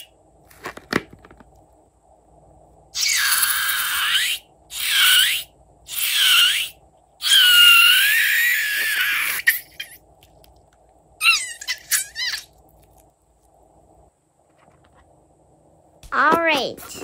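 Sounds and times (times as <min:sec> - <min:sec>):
balloon air squealing: 0:03.0 - 0:10.0.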